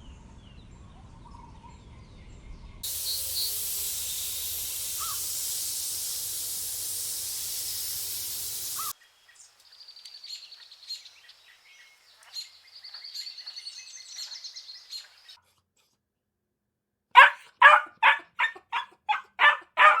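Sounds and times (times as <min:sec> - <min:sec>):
steady hiss: 0:02.8 - 0:12.8
small bird chirping: 0:02.8 - 0:15.4
dog barking rapidly: 0:17.2 - 0:20.0.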